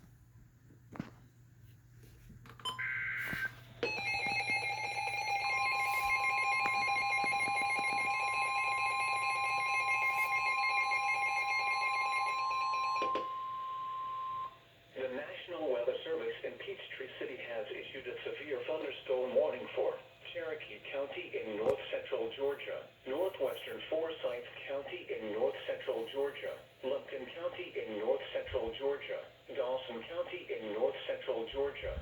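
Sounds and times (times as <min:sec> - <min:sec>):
piercing dual-tone alarm: 0:02.6 - 0:14.6
second steady tone: 0:02.6 - 0:14.6
data-header tones: 0:02.7 - 0:12.4.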